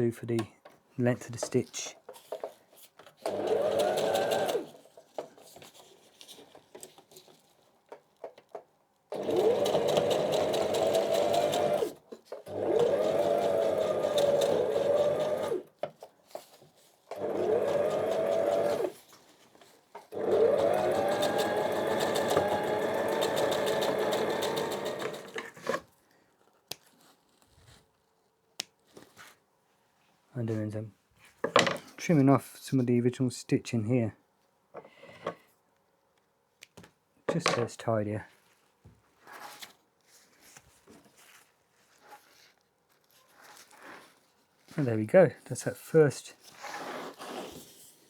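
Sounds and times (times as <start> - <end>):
sewing machine motor whine: 3.2 - 4.8, 9.1 - 15.6, 17.1 - 19.0, 20.1 - 25.8.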